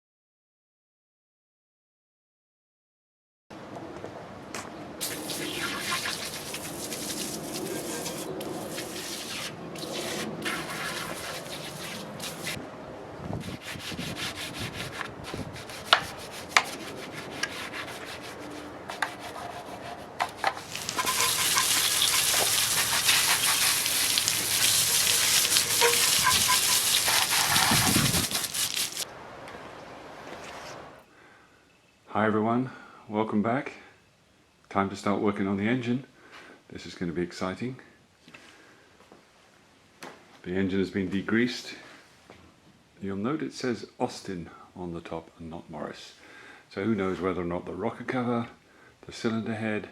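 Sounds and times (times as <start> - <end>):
scrubbing and rubbing: 5.0 - 12.6, 13.4 - 29.0
spray hissing: 5.0 - 12.6, 20.3 - 29.0.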